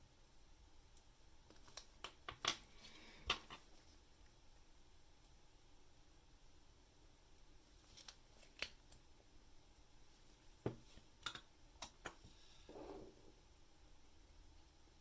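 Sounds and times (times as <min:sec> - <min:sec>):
soft rustle: 0:07.6 - 0:08.7, 0:09.8 - 0:11.2.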